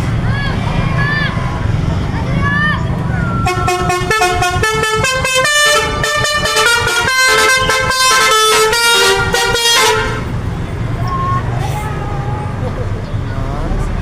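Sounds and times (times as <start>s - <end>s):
multi-tone air horns melody: 3.4s - 10.3s.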